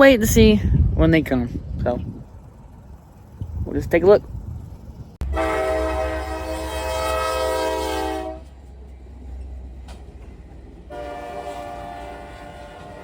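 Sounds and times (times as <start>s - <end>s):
train low rumble: 0.0s - 13.0s
locomotive air horn blasts: 5.2s - 8.6s, 10.9s - 13.0s.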